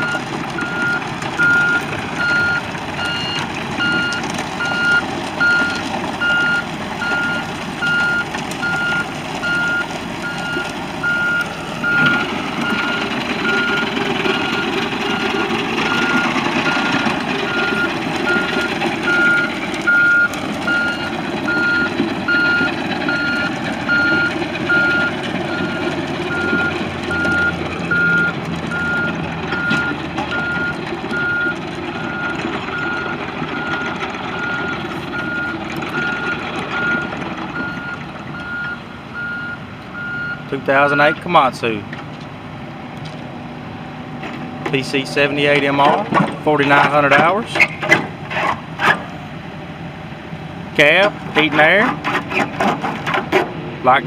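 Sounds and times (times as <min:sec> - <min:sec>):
excavator travel alarm beeping: 0:00.0 - 0:41.2
diesel engine running: 0:00.0 - 0:54.0.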